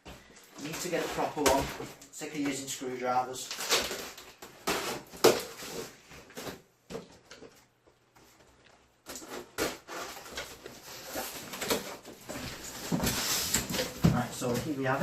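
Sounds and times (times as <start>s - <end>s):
cardboard tearing and rustling: 3.4s - 6.6s, 9.0s - 15.0s.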